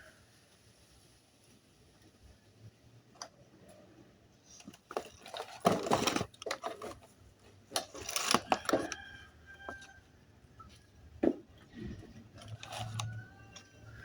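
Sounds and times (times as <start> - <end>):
tools clicking and scraping: 4.5 - 10.0, 11.8 - 14.0.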